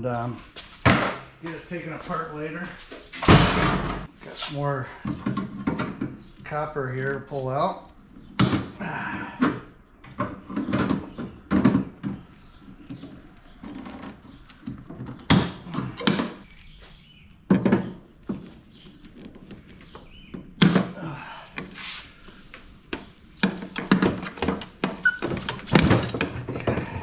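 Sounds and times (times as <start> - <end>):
metallic clunks and knocks: 23.0 - 27.0.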